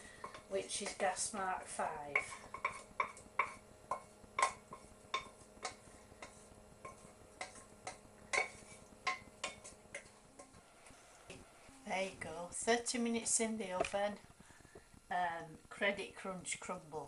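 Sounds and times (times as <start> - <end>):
spoon knocking against cookware: 2.1 - 10.5.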